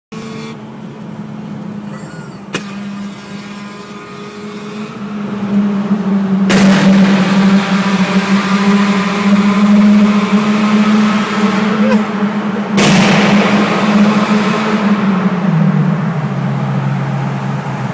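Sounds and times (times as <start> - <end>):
car engine running: 0.2 - 17.9.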